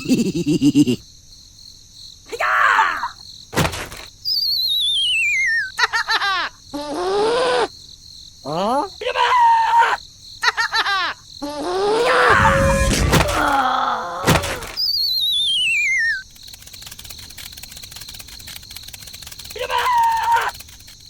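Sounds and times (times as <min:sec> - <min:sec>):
wobbly cartoon voice sounds: 0:00.0 - 0:01.0, 0:06.2 - 0:07.7, 0:08.4 - 0:10.0, 0:11.4 - 0:14.7
heavy thump: 0:03.6 - 0:04.1, 0:12.3 - 0:13.6
groaning cries: 0:05.9 - 0:07.7, 0:08.4 - 0:14.8
faint crackly background: 0:10.0 - 0:21.0
whistle sliding down: 0:14.4 - 0:16.2.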